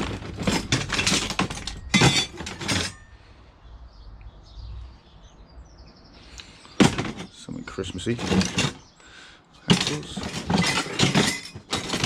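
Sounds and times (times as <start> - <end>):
scrap metal clinking: 0.0 - 3.2, 6.7 - 7.4, 8.0 - 8.9, 9.7 - 12.0.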